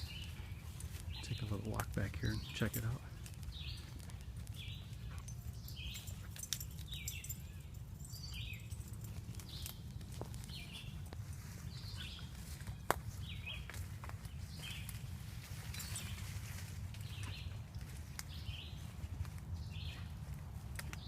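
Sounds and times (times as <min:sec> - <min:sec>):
footsteps through undergrowth: 0:00.0 - 0:06.0, 0:08.9 - 0:21.0
twigs snapping: 0:12.4 - 0:15.0, 0:20.2 - 0:21.0.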